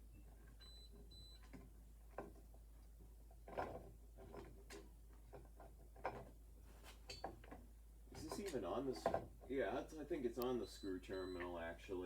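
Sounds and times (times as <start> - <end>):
low steady hum: 0.0 - 12.0
faint clicks and light taps: 10.3 - 11.6.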